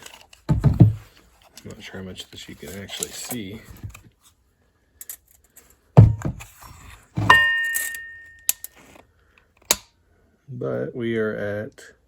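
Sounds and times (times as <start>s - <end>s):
dull metal thunk: 0.5s - 1.1s, 6.0s - 6.5s
ringing metallic clank: 7.3s - 8.7s.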